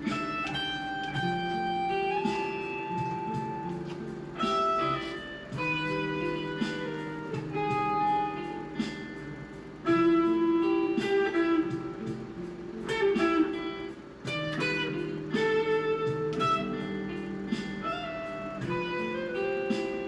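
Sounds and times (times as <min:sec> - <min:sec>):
solo guitar playing: 0:00.0 - 0:20.0.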